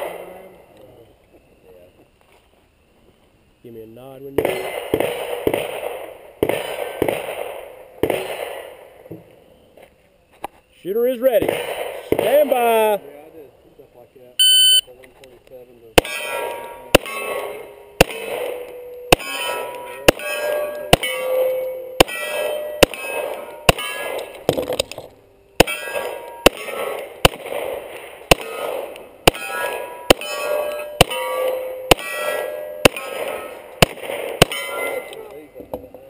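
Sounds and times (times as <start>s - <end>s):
pistol shots: 4.4s - 9.1s, 11.3s - 12.9s, 16.0s - 35.3s
bullet clanging on steel target: 16.0s - 27.1s, 29.3s - 33.8s, 34.4s - 35.6s.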